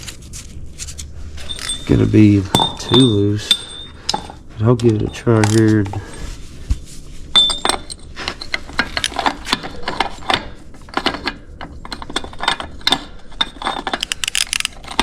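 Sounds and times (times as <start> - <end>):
hand tools clicking on metal: 1.5 - 6.1.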